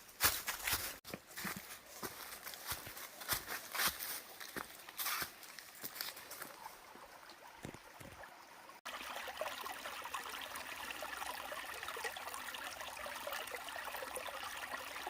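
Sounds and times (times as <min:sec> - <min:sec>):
running water: 0:05.4 - 0:15.0.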